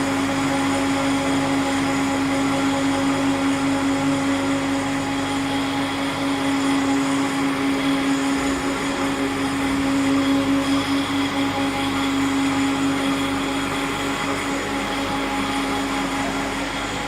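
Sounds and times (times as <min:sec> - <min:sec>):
floor grinder humming and grinding: 0:00.0 - 0:17.0.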